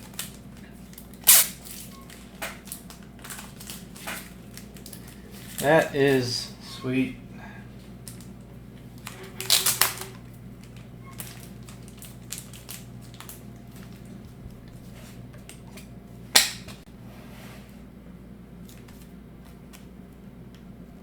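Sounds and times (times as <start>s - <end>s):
plastic packaging rustling: 0.0s - 6.4s, 7.8s - 16.7s
low steady hum: 0.0s - 21.0s.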